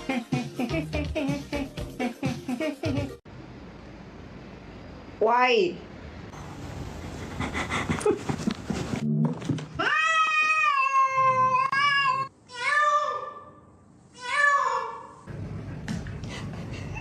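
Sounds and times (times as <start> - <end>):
cat meowing: 9.8 - 13.0.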